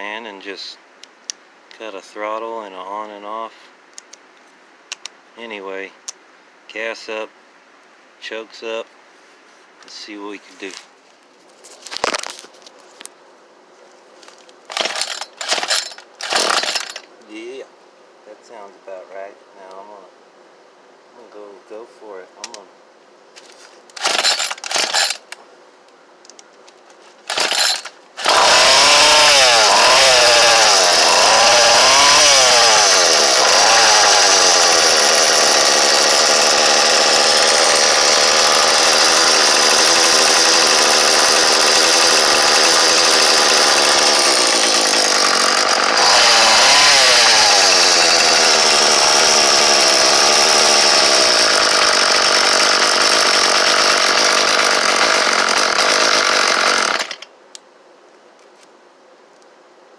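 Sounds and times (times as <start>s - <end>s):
leaf blower engine revving: 14.7s - 17.0s, 24.0s - 25.2s, 27.3s - 57.2s.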